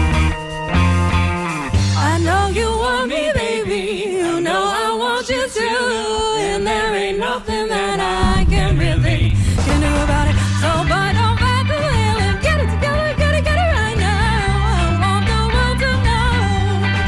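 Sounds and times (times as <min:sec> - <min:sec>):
live band playing: 0:00.0 - 0:02.5, 0:09.3 - 0:17.0
voices singing in harmony: 0:02.0 - 0:17.0.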